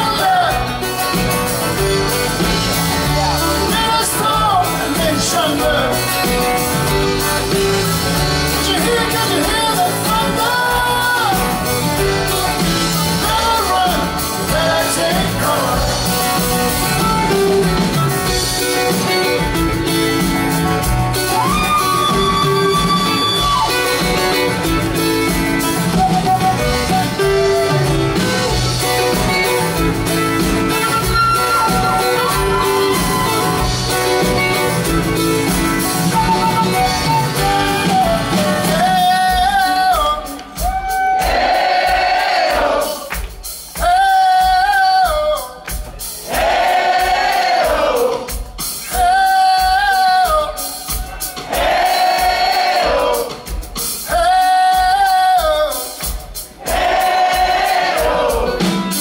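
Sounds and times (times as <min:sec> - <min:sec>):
live pop-rock band playing: 0:00.0 - 0:59.0
group singing wordless phrase: 0:13.2 - 0:16.1, 0:41.3 - 0:43.1, 0:46.2 - 0:48.3, 0:51.5 - 0:53.4, 0:56.6 - 0:58.7.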